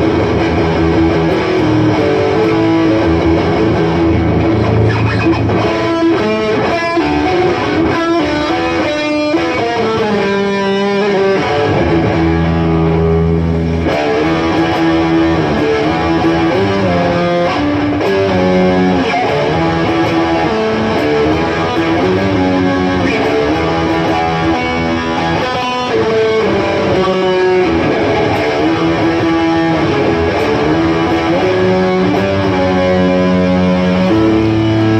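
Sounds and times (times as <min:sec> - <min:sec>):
guitar plucking and strumming: 0:00.0 - 0:34.9.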